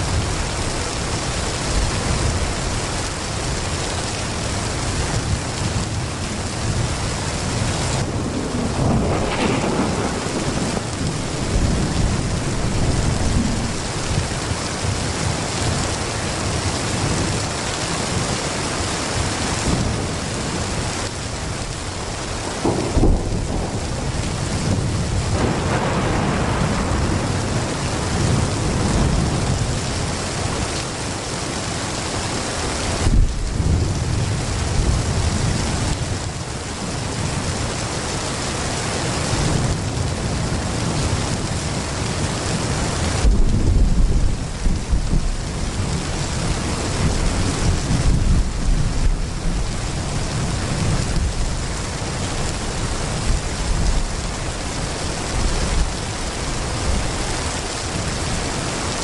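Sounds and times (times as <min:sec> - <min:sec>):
thunder rumbling: 0:00.0 - 0:18.4, 0:19.1 - 0:31.1, 0:32.9 - 0:37.9, 0:39.1 - 0:59.0
heavy rain falling: 0:00.0 - 0:59.0
low thunder booms: 0:08.0 - 0:14.2, 0:22.4 - 0:29.8, 0:33.0 - 0:35.5, 0:43.1 - 0:51.6.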